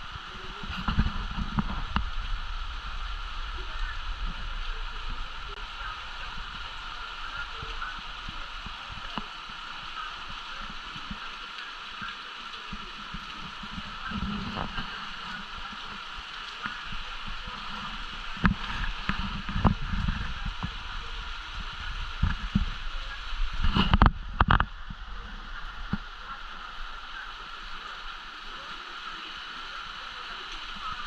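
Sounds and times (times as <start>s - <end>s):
wind buffeting microphone: 0.0s - 11.4s, 12.0s - 27.9s
hurricane wind and rain: 0.0s - 31.0s.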